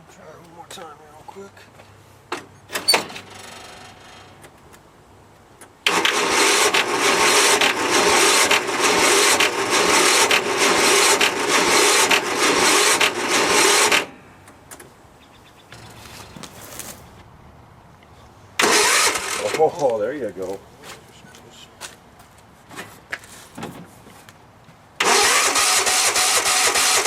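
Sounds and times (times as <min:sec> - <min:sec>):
mower engine cranking: 0:02.7 - 0:04.6, 0:05.8 - 0:14.8, 0:18.6 - 0:20.0, 0:25.0 - 0:27.0.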